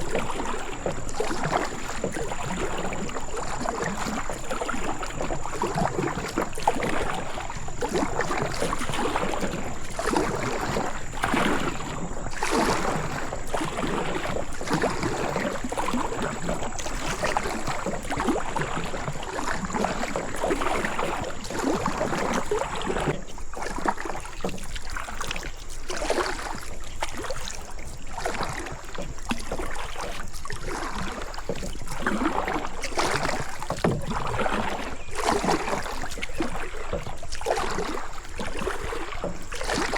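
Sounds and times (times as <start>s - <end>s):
kayak paddle splashing: 0.0s - 39.9s.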